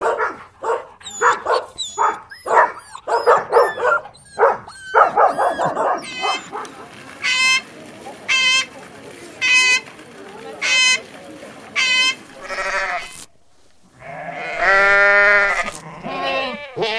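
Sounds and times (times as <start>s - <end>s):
dog barking: 0.0s - 7.0s.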